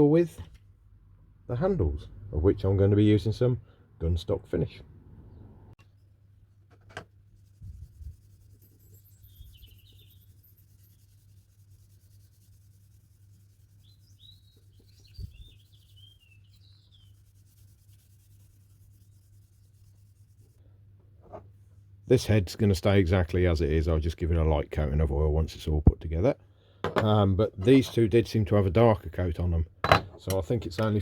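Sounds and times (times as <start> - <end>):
cloth rubbing wood: 6.8 - 20.6
birds chirping: 8.6 - 11.0, 13.7 - 17.7.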